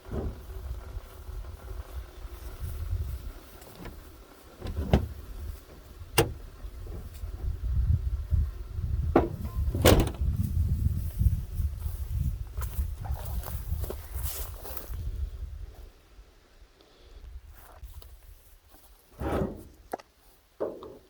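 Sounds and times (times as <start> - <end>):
low uneven rumble: 0.0 - 15.9
knocks and clanks on car wheel: 9.1 - 10.2.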